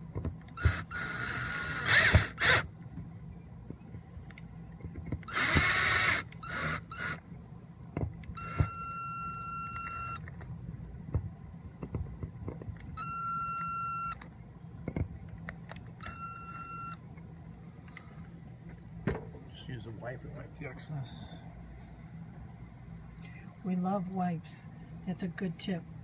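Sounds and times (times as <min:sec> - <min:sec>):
long electronic beeps: 0:08.4 - 0:10.2, 0:13.0 - 0:14.2, 0:16.0 - 0:17.0.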